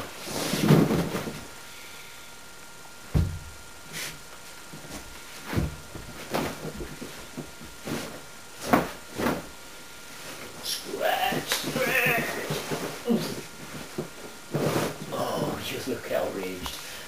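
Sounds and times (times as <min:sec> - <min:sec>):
knocks and thumps: 0:03.1 - 0:03.5.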